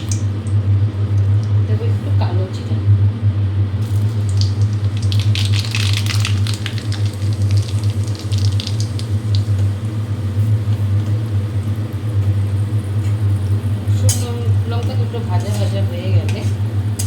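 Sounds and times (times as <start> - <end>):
steady low hum: 0.0 - 17.0
spices sizzling in hot oil: 3.8 - 17.0.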